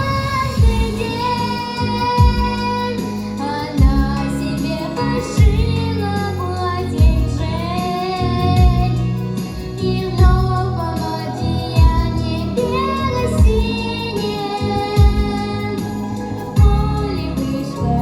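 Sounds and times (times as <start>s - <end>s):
heavy bass beat thumping: 0.0s - 2.8s, 3.8s - 4.3s, 5.4s - 6.0s, 7.0s - 10.8s, 11.5s - 12.4s, 13.2s - 15.7s, 16.4s - 17.4s
backing music: 0.0s - 18.0s
girl singing: 0.0s - 18.0s.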